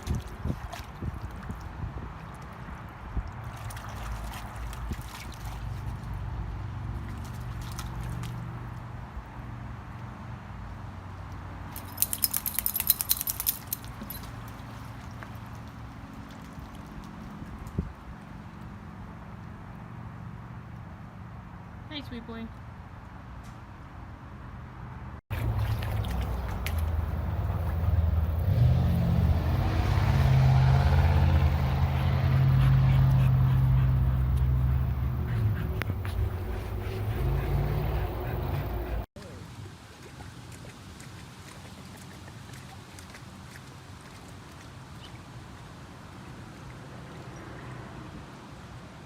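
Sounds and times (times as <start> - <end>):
engine running steadily: 25.3 - 39.1.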